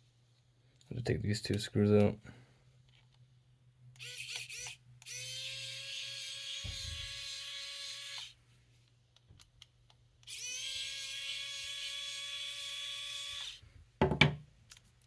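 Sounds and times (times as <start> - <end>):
power screwdriver motor running: 4.0 - 8.3, 10.3 - 13.6.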